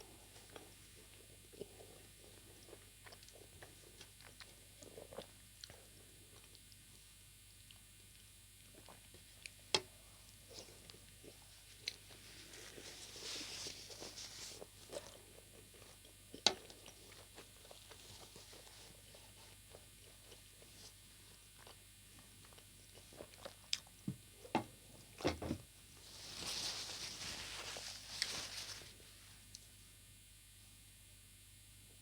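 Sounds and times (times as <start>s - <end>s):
person chewing food: 0.1s - 6.9s, 7.6s - 25.4s.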